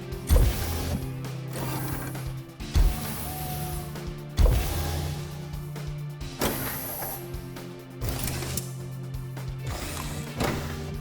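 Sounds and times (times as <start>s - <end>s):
mechanical servo hum: 0.3s - 5.4s.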